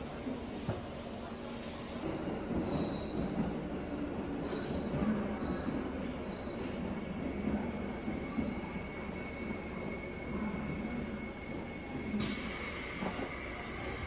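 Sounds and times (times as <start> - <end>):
train rumble: 0.0 - 14.0
wheel squeal: 2.6 - 3.3.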